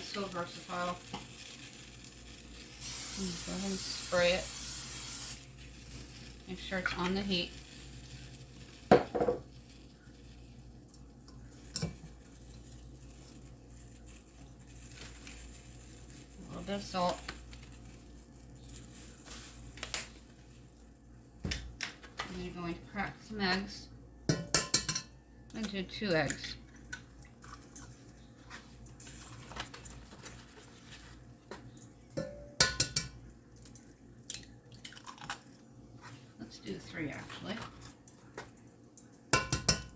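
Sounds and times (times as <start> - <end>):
kitchenware clink: 24.3 - 25.2, 32.2 - 33.2
eggs tapped against a pot: 24.3 - 25.6, 31.5 - 33.3, 39.4 - 39.9.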